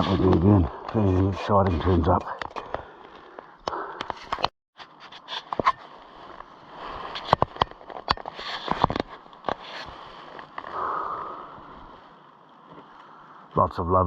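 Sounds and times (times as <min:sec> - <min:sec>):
rustling undergrowth: 0:04.2 - 0:13.4.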